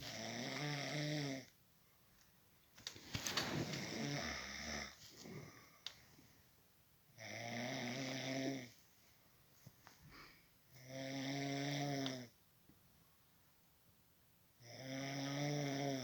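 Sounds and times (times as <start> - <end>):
person snoring: 0.0 - 1.5, 3.7 - 5.7, 7.2 - 8.7, 10.8 - 12.3, 14.6 - 16.0.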